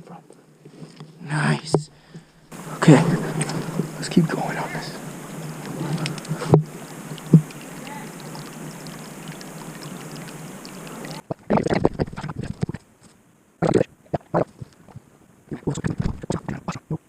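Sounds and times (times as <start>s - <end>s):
creek rushing: 2.5s - 11.3s.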